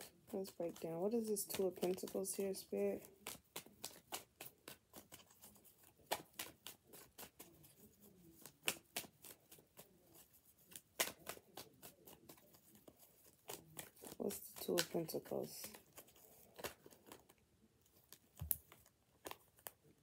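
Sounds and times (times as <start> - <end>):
cards being shuffled: 0.0 - 20.0
sharp card snaps: 6.0 - 7.5, 10.7 - 11.7.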